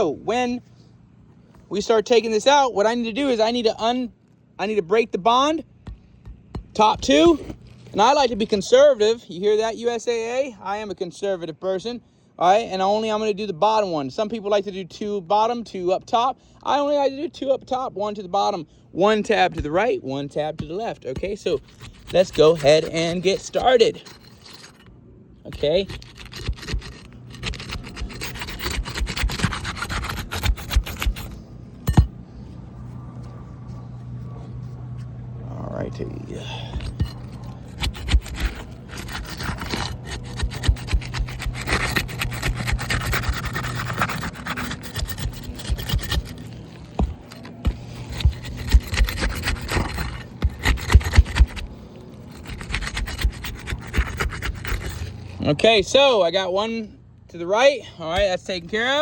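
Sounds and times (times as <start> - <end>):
tool scraping under shingles: 4.6 - 9.3, 16.8 - 32.6, 35.9 - 56.6, 57.6 - 59.0.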